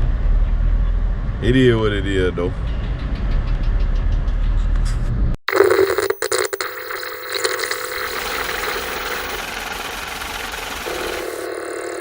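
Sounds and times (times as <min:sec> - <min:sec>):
car engine running: 0:08.1 - 0:12.0.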